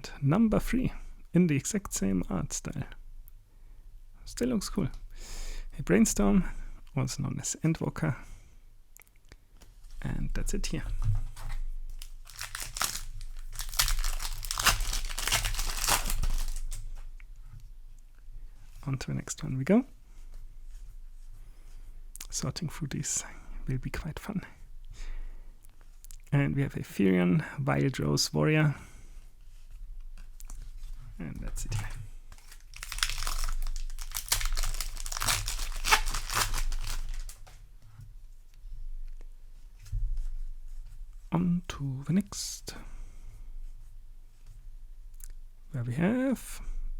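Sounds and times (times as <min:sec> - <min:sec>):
foil wrapper crinkling: 0:11.9 - 0:17.0, 0:32.3 - 0:37.5.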